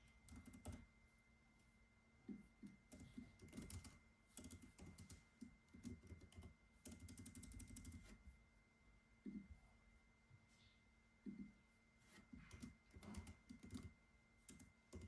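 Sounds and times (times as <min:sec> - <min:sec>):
quiet keyboard typing: 0:00.0 - 0:00.9, 0:02.3 - 0:08.2, 0:12.1 - 0:15.0.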